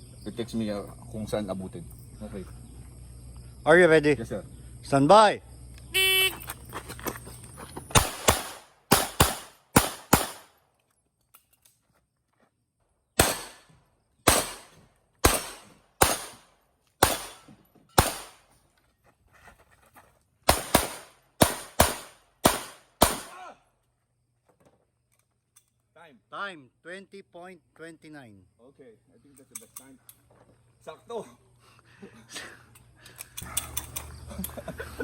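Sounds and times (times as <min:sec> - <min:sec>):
pistol shots: 0:07.9 - 0:10.6, 0:13.2 - 0:18.5, 0:20.5 - 0:23.4.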